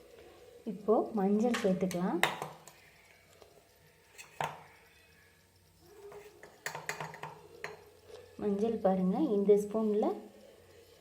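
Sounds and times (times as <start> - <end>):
spoon clinking on containers: 6.2 - 7.8.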